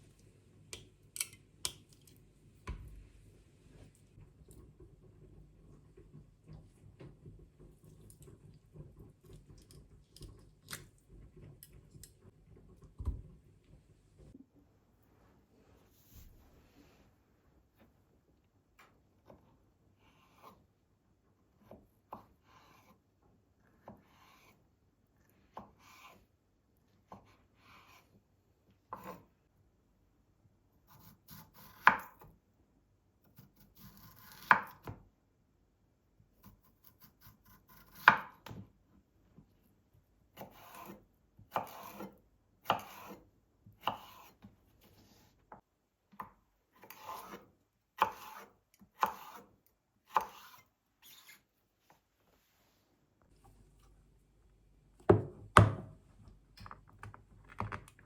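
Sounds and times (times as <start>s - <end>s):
knife chopping on cutting board: 36.9s - 38.6s, 40.4s - 43.2s, 43.8s - 44.9s, 48.0s - 49.5s, 50.1s - 50.6s.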